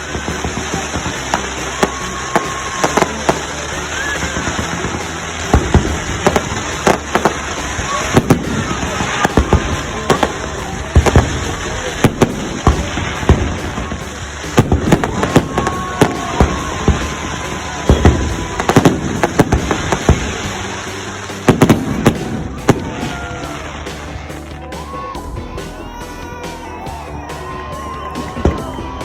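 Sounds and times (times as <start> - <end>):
loud firework bangs: 0.0 - 26.0, 27.4 - 29.0.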